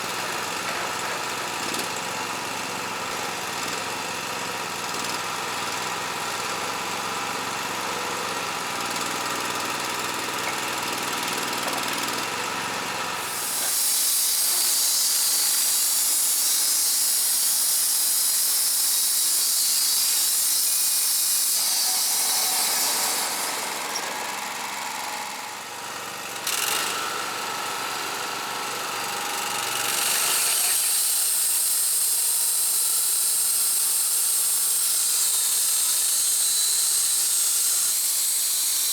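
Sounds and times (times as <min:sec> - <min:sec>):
band saw blade cutting log: 0:13.2 - 0:27.4, 0:29.0 - 0:38.9.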